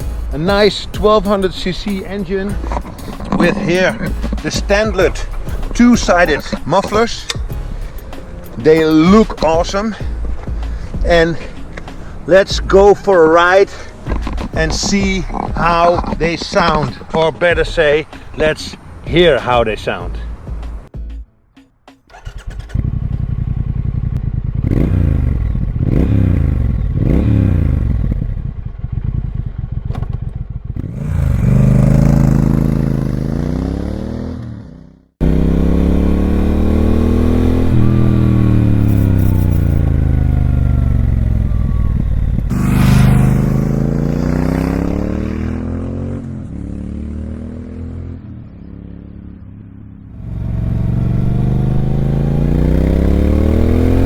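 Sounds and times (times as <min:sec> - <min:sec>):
motorcycle engine revving while riding: 0:22.1 - 0:54.0.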